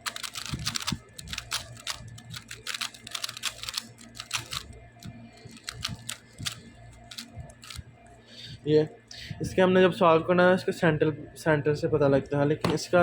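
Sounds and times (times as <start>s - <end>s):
puzzle cube clicking: 0.0s - 4.7s, 5.6s - 7.8s.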